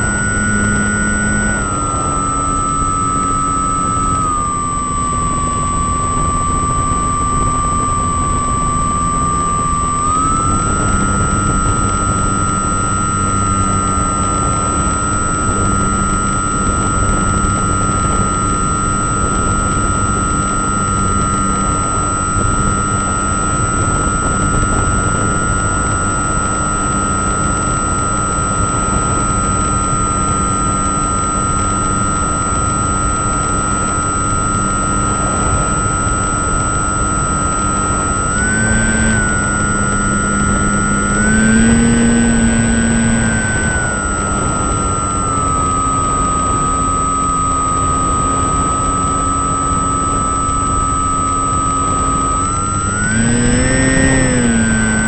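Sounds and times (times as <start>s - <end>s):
engine whining: 0.0s - 55.0s.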